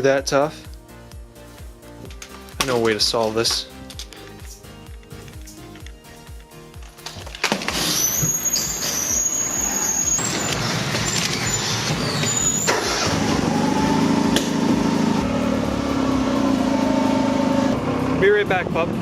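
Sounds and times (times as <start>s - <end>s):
car engine running: 9.9s - 19.0s.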